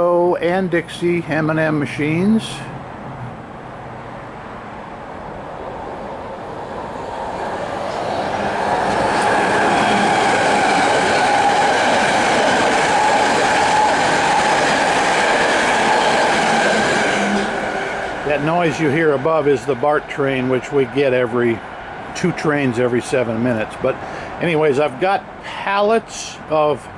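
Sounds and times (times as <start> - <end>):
train wheels on elevated track: 1.4 - 26.0
high-pitched train whine: 5.2 - 24.9.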